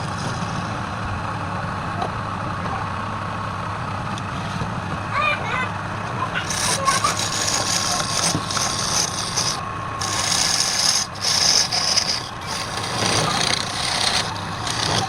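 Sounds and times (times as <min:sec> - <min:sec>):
tool scraping spinning wood: 0:00.0 - 0:00.8, 0:06.2 - 0:15.0
lathe motor hum: 0:05.8 - 0:15.0.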